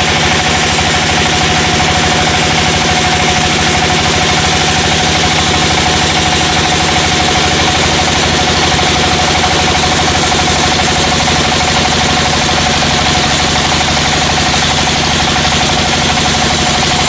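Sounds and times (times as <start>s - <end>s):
sawmill engine running: 0.0s - 17.0s
steady whining tone: 0.0s - 17.0s.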